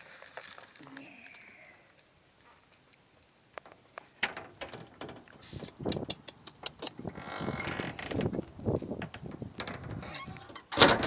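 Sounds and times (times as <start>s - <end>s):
sharp clicks and rattles: 3.5s - 11.0s
wind gusting on microphone: 4.6s - 11.0s.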